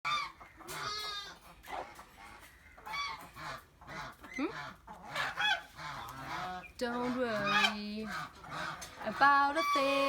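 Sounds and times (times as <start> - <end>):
geese honking: 2.2 - 10.0.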